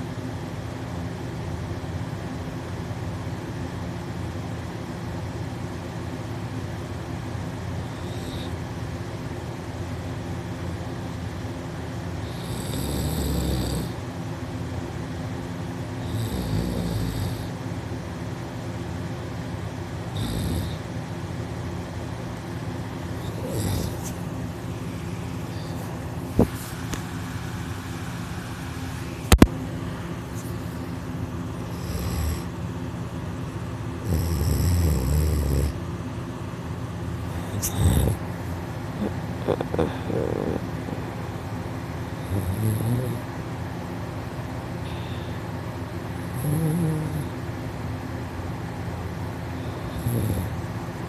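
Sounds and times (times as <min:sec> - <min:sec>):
steady background hum: 0:00.0 - 0:51.0
person snoring: 0:07.8 - 0:08.6, 0:12.2 - 0:14.0, 0:16.0 - 0:17.6, 0:20.1 - 0:20.9, 0:23.2 - 0:24.3, 0:31.6 - 0:32.6, 0:34.0 - 0:35.8, 0:37.2 - 0:38.2, 0:39.0 - 0:41.2, 0:42.2 - 0:43.3, 0:46.3 - 0:47.3, 0:49.6 - 0:50.6.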